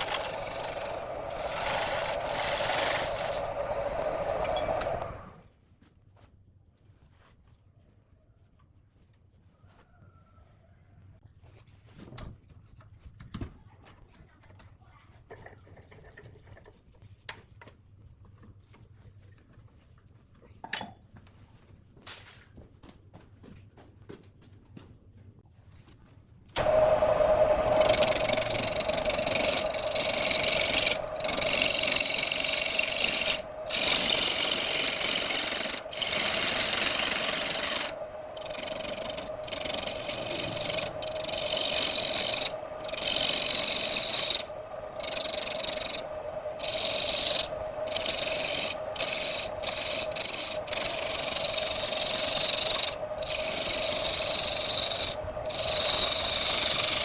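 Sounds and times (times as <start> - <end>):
lathe motor hum: 0.0 - 5.4, 26.6 - 57.0
lathe tool scraping wood: 0.0 - 5.4, 26.6 - 57.0.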